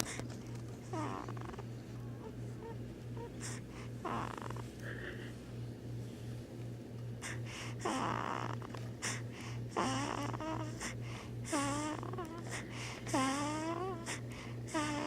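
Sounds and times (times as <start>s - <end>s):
baby grunting squeakily: 11.5s - 12.4s, 13.1s - 15.0s.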